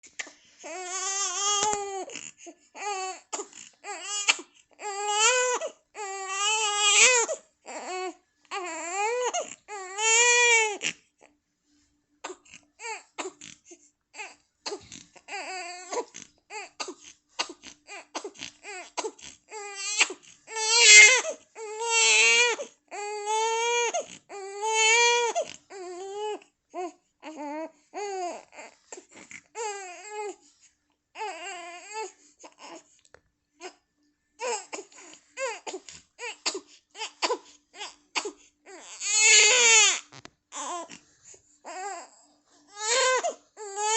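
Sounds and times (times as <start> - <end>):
baby crying: 0.6 - 11.0, 14.2 - 28.8, 31.2 - 32.8, 34.4 - 40.0, 40.6 - 41.0, 41.6 - 43.9.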